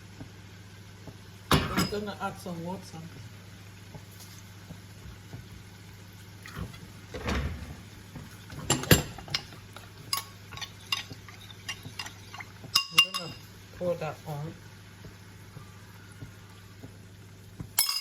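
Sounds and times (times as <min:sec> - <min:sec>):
spoon clinking against a bowl: 0:08.8 - 0:13.5, 0:17.8 - 0:18.0
water poured into a bowl: 0:10.5 - 0:12.8.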